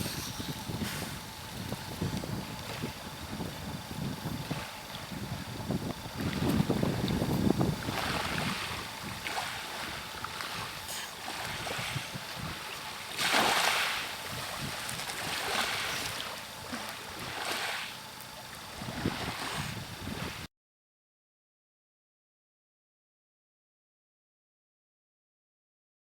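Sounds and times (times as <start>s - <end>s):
small waves washing onto beach: 0.0s - 20.5s.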